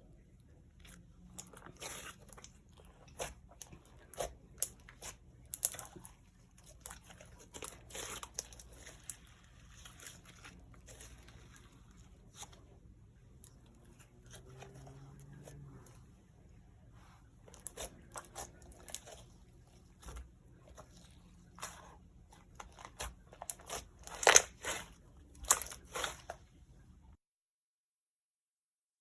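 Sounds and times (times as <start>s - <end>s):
slime squished by hand: 0.9s - 12.6s, 17.4s - 26.4s.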